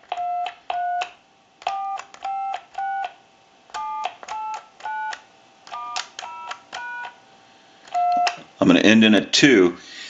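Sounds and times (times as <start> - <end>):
touch-tone keypad beeps: 3.8 - 7.2.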